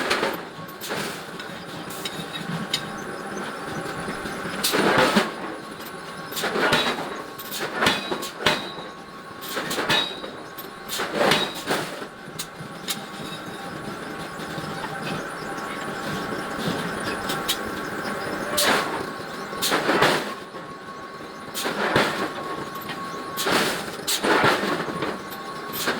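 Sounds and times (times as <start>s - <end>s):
forge machinery hum: 0.0s - 25.9s.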